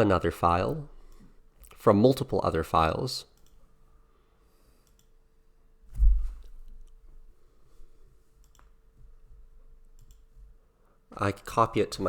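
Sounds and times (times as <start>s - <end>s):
faint steady hum: 0.0s - 12.0s
computer mouse clicking: 4.8s - 5.2s, 8.4s - 8.8s, 9.9s - 10.4s
heavy low thump: 5.9s - 6.6s.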